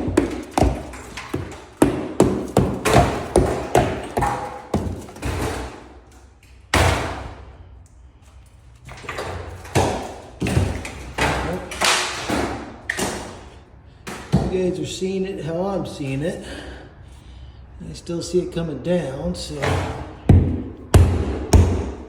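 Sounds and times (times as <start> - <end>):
drywall knocks and thuds: 0.0 - 6.0, 6.7 - 7.5, 9.0 - 13.4, 14.1 - 14.6, 19.6 - 22.0
drywall crumbling and scraping: 0.0 - 7.4, 8.8 - 13.5.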